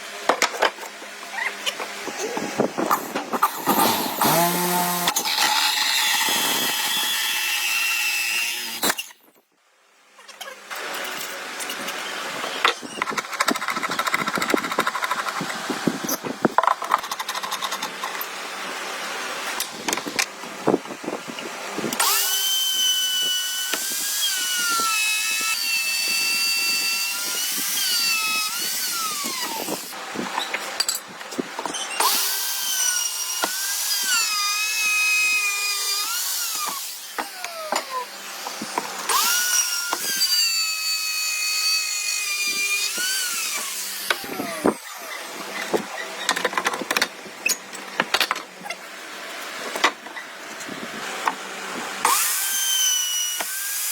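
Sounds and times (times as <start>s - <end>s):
power tool motor whining: 1.6s - 9.3s, 22.0s - 30.0s, 32.0s - 47.6s, 52.0s - 53.9s.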